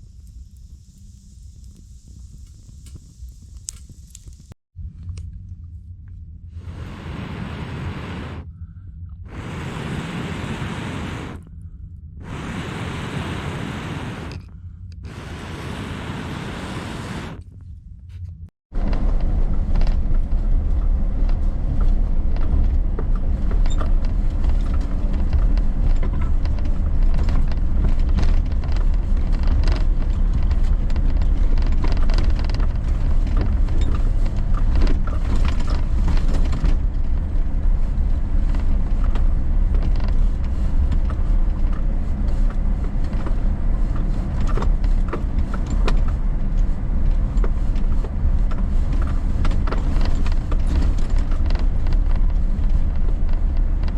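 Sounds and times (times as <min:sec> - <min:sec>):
car rumble on rough road: 0:15.1 - 0:53.9
body creaks and rattles: 0:17.4 - 0:53.9.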